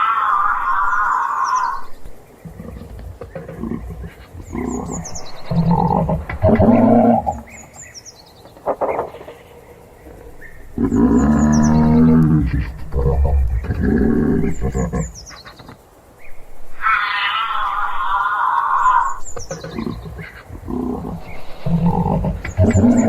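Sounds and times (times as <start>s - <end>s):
giraffe humming calls: 0.0s - 7.8s, 16.8s - 23.0s
bird chirping: 0.0s - 23.0s.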